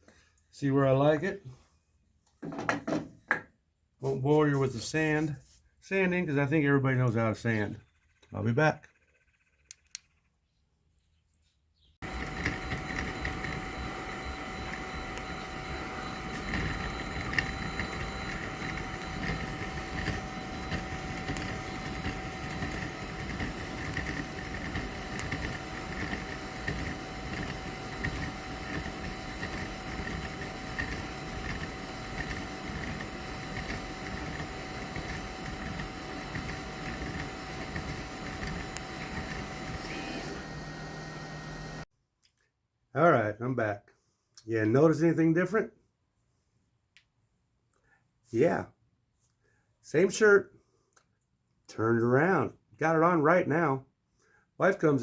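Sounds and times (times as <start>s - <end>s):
shop machine whining: 12.0s - 41.9s.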